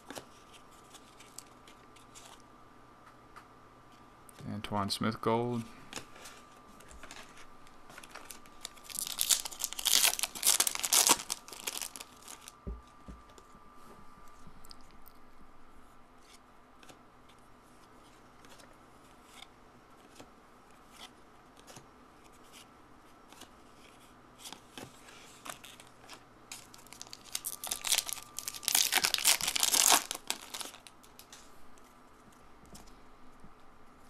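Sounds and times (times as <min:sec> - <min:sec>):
wrapper tearing and crinkling: 0:08.0 - 0:12.6, 0:26.5 - 0:31.4.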